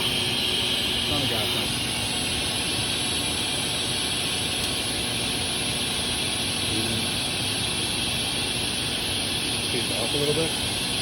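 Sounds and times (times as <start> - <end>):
sharpening machine whirring: 0.0 - 6.4.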